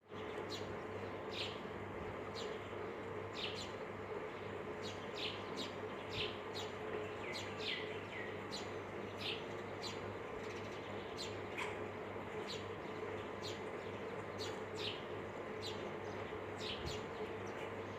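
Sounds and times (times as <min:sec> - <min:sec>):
steady low hum: 0:00.0 - 0:17.9
bird chirping: 0:04.4 - 0:11.7.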